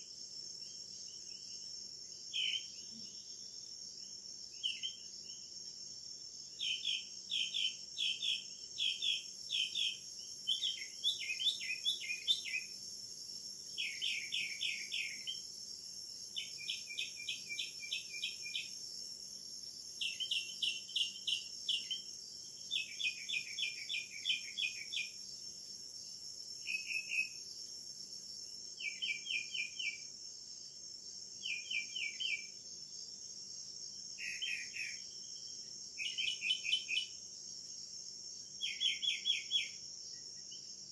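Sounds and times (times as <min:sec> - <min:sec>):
high-pitched insect chorus: 0:00.0 - 0:40.9
bird singing: 0:02.3 - 0:03.7, 0:04.6 - 0:05.5, 0:06.4 - 0:12.8, 0:13.7 - 0:15.5, 0:16.3 - 0:18.8, 0:20.0 - 0:25.3, 0:26.6 - 0:27.4, 0:28.8 - 0:30.1, 0:31.4 - 0:32.5, 0:34.2 - 0:37.2, 0:38.4 - 0:40.9.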